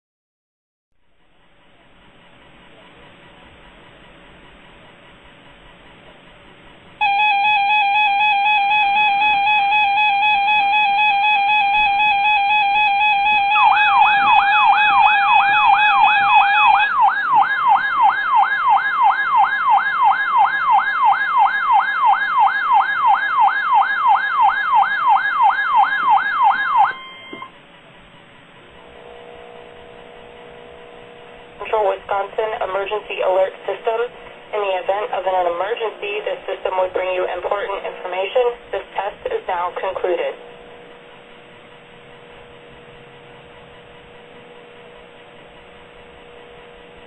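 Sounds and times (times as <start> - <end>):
buzzing multi-tone alert signal: 7.0 - 19.2, 25.5 - 27.5
wailing sweeping tone: 7.0 - 21.8.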